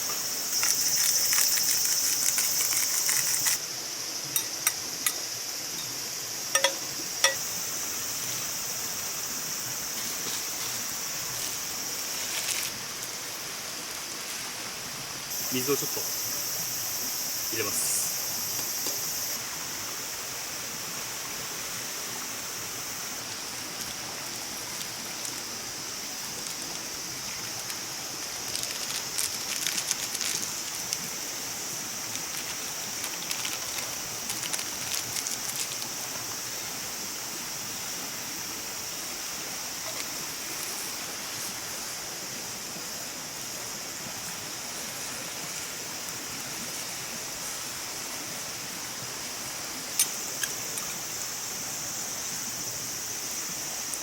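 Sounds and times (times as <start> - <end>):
high insect-like drone: 0.0 - 13.1, 15.3 - 20.2
stream-like rushing noise: 0.0 - 54.0.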